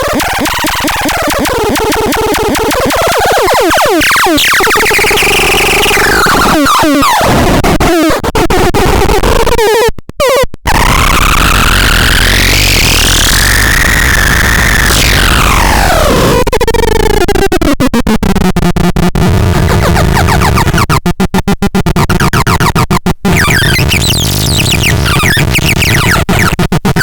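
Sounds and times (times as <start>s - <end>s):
harsh squealing synth noise: 0.0s - 8.2s, 8.8s - 27.0s.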